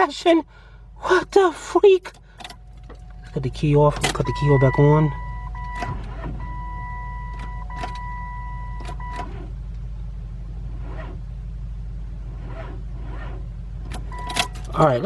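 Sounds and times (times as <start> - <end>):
steady low hum: 0.2 - 15.0
car warning chime: 2.5 - 9.3, 14.1 - 14.6.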